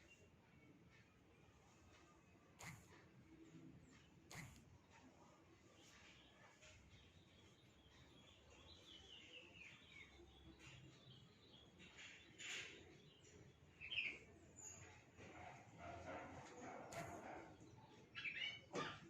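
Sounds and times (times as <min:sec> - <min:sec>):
canary chirping: 0:05.7 - 0:19.0.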